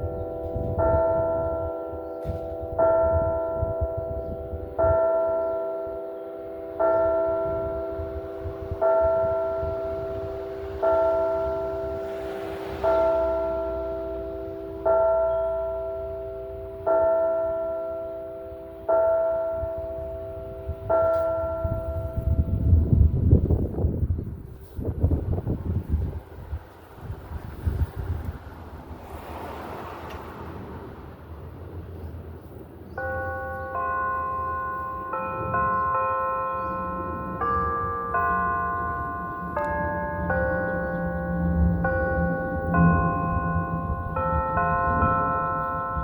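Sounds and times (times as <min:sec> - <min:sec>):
church bell tolling: 0:00.0 - 0:26.5, 0:32.8 - 0:46.0.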